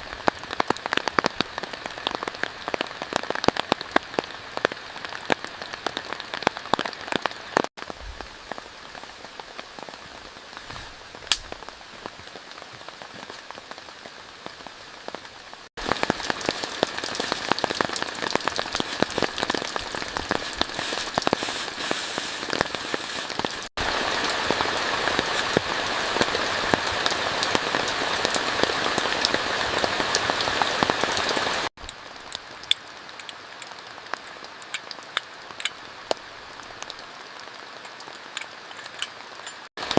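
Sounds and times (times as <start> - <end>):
heavy rain falling: 0.0 - 39.9
sharp raindrop hits close by: 15.8 - 21.5.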